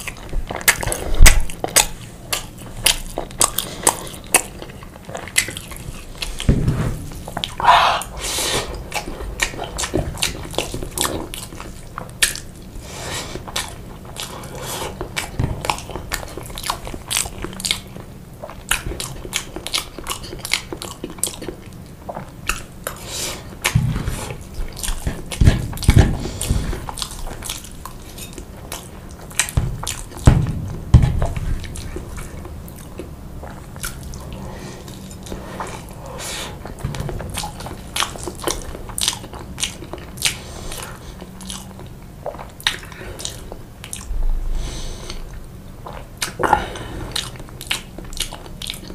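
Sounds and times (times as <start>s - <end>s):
close chewing with mouth clicks: 0.0s - 6.5s, 7.1s - 44.2s, 44.8s - 48.9s
low thumps: 29.6s - 31.7s.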